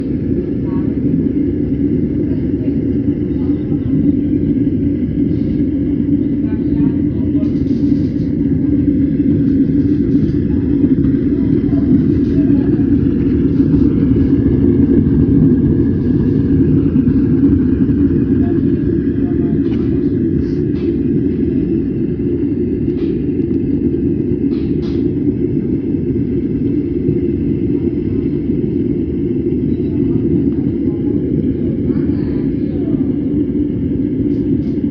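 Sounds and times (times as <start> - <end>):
oil burner roaring: 0.0 - 34.9.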